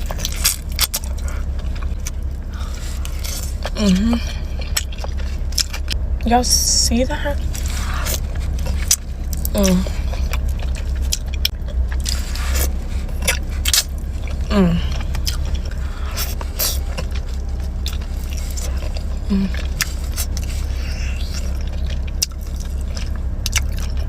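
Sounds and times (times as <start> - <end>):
wet chewing: 0.0 - 6.0, 7.4 - 24.0
steady low hum: 0.0 - 24.0
hummed voice sounds: 3.7 - 4.6, 9.5 - 10.2, 14.4 - 15.2, 19.1 - 19.8.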